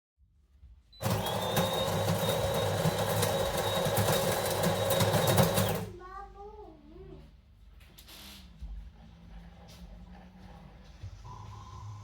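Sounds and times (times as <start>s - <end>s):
coffee machine humming: 1.0s - 5.9s.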